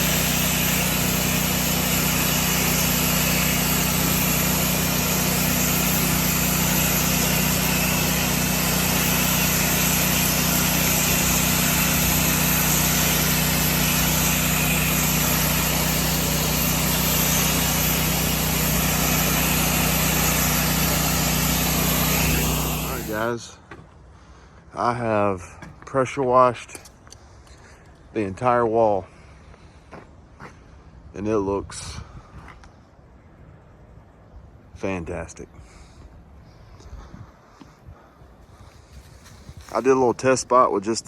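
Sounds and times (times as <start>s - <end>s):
high-pressure water spraying: 0.0s - 23.3s, 38.9s - 40.4s
pressure washer engine running: 0.0s - 23.3s, 39.2s - 40.5s.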